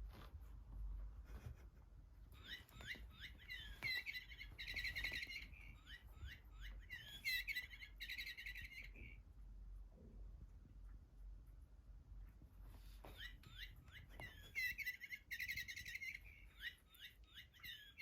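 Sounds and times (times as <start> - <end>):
squeaky toy ball chirping: 2.4 - 9.2, 13.1 - 18.0.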